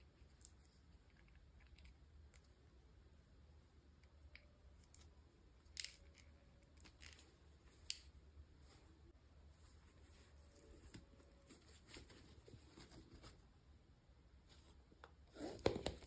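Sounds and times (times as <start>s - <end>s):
faint low hum: 0.0s - 16.0s.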